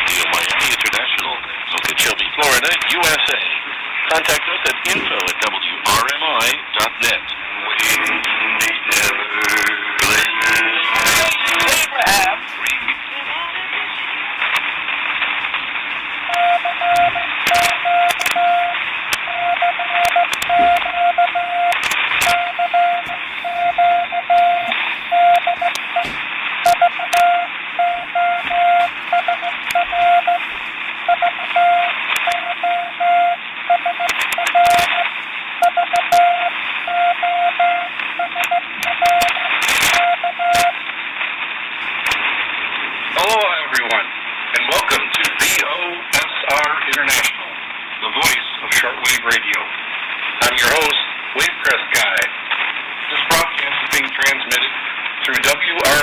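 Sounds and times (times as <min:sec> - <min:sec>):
radio static hiss: 0:00.0 - 0:56.0
static crackles: 0:00.0 - 0:56.0
morse code beeps: 0:16.3 - 0:40.8.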